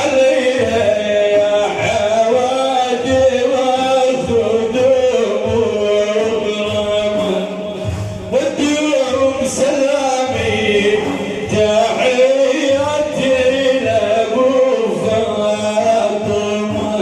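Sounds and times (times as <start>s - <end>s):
men chanting a devotional song: 0.0s - 17.0s.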